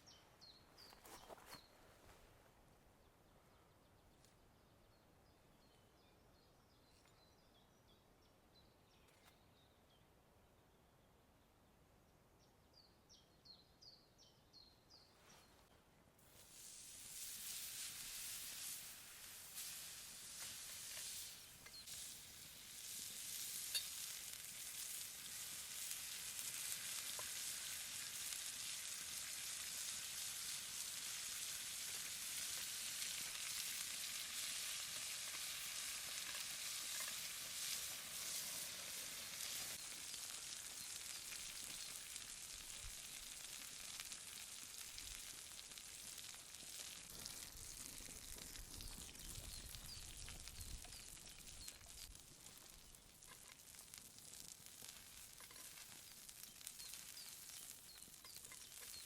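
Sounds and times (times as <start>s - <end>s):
food sizzling on hot stone: 16.2s - 59.0s.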